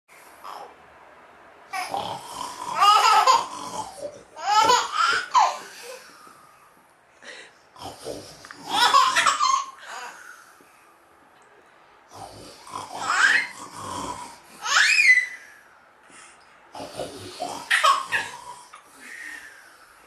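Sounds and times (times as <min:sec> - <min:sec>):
baby giggling: 0:02.7 - 0:03.6, 0:04.2 - 0:06.0, 0:08.7 - 0:09.8, 0:17.6 - 0:18.4.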